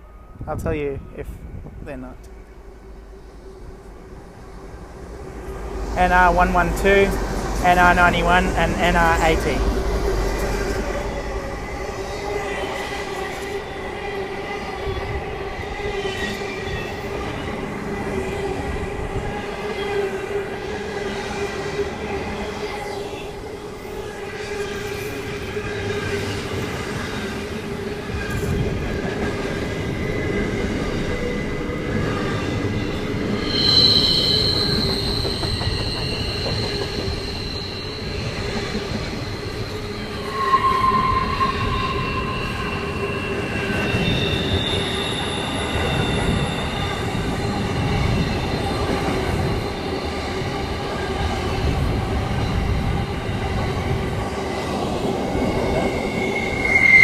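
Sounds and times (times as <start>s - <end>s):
freight train rumbling past: 0.0s - 57.0s
high wheel squeals: 32.6s - 50.0s, 55.3s - 57.0s.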